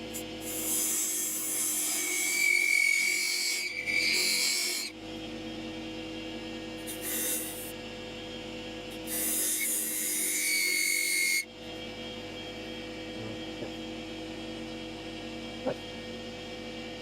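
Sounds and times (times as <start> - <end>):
lathe motor running: 0.4 - 5.8.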